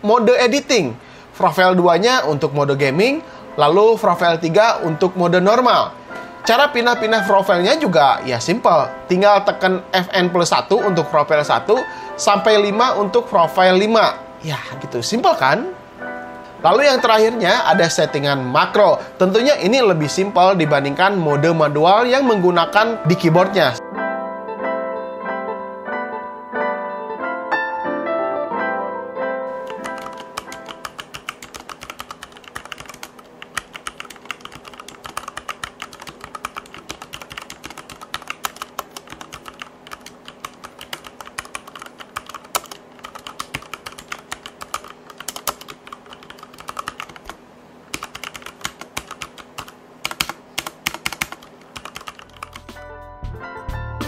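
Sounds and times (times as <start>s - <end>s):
quiet background music: 0.0s - 54.0s
mechanical keyboard typing: 29.6s - 52.8s.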